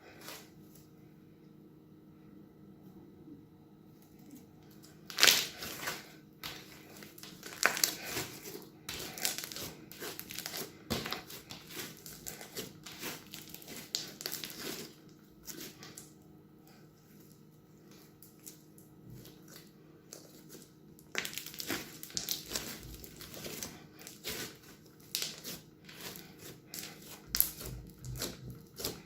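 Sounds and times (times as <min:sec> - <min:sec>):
crunchy slime squeezed in plastic bag: 0:04.9 - 0:16.1, 0:18.0 - 0:29.0.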